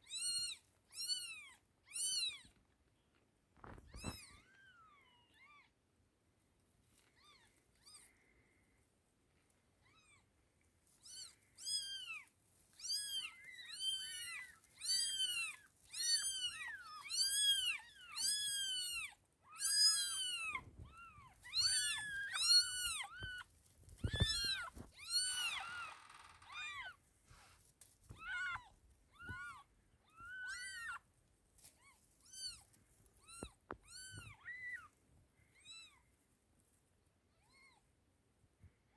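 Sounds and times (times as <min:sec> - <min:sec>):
brief rustle: 0:03.6 - 0:04.4, 0:20.3 - 0:28.6
kittens mewing: 0:11.0 - 0:27.0, 0:28.0 - 0:31.0.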